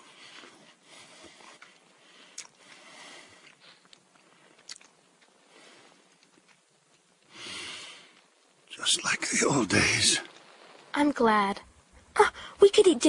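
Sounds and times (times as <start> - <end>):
person biting and chewing food: 1.6 - 2.6, 3.4 - 5.3.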